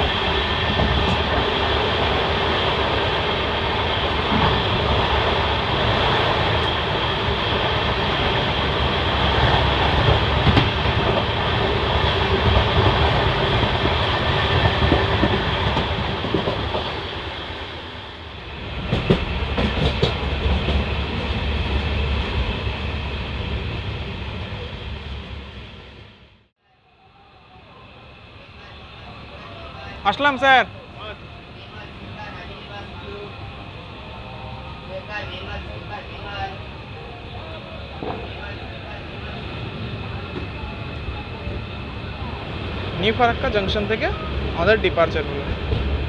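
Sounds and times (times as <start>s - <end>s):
train wheels rumbling on rails: 0.0s - 26.4s, 28.0s - 46.0s.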